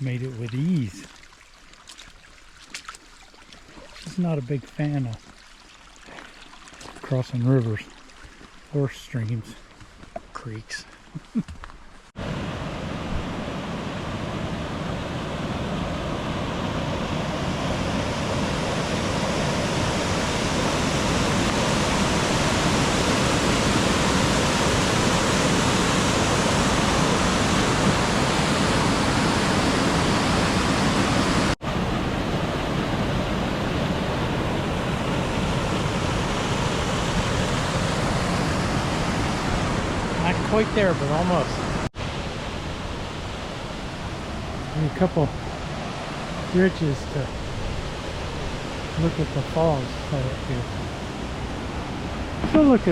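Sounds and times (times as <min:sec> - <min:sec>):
waterfall rushing: 0:12.2 - 0:52.9.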